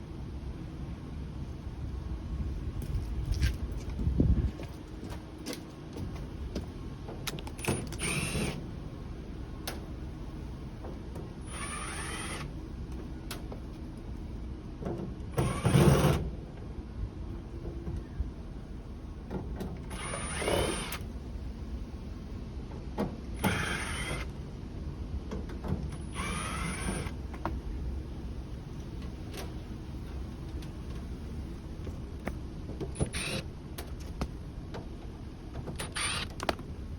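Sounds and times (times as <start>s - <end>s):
power drill whining: 7.7s - 8.6s, 11.4s - 12.5s, 15.4s - 16.1s, 19.9s - 21.0s, 23.4s - 24.3s, 26.0s - 27.2s, 33.0s - 33.4s, 35.8s - 36.5s.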